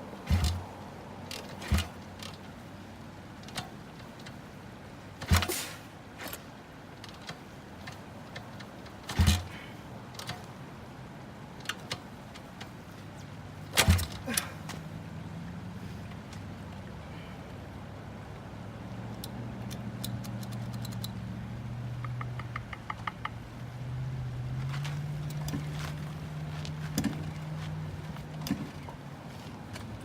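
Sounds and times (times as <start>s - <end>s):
engine turning over: 0.2s - 0.7s, 5.2s - 6.4s, 9.0s - 10.4s, 13.7s - 14.5s.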